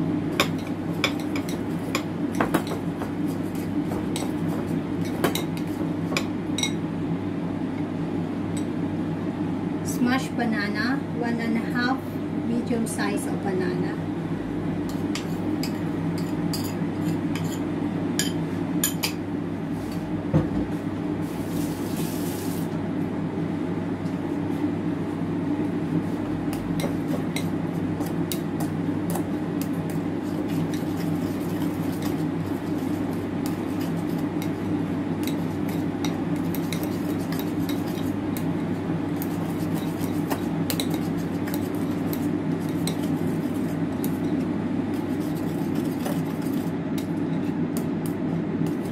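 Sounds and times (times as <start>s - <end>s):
steady low hum: 0.0s - 48.9s
utensil scraping a mixing bowl: 29.9s - 38.5s, 39.2s - 46.8s.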